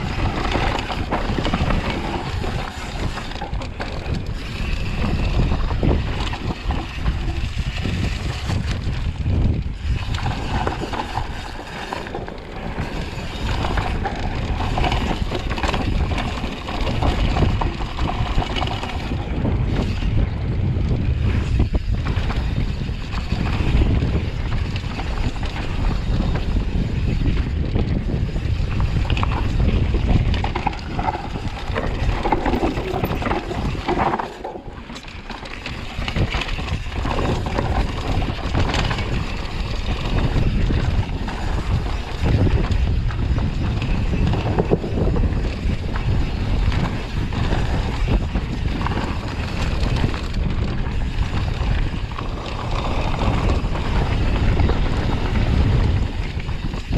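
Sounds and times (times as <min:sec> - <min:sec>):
bike rattling: 0:00.0 - 0:56.9
rolling bike tyre noise: 0:00.0 - 0:56.9
wind buffeting microphone: 0:00.0 - 0:56.9.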